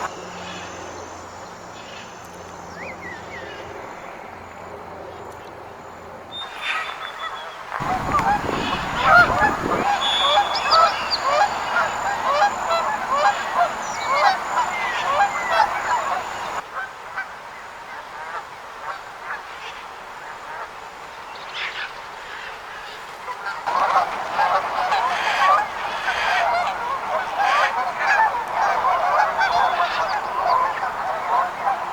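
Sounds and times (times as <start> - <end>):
geese honking: 6.4 - 16.6, 22.7 - 31.9.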